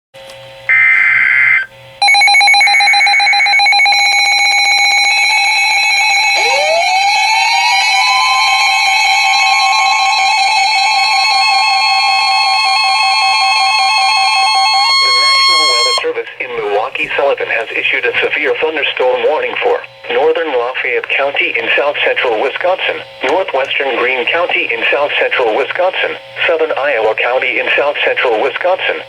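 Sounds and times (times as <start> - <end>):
two-tone alarm: 0.7 - 16.1
screechy data tones: 0.7 - 16.2.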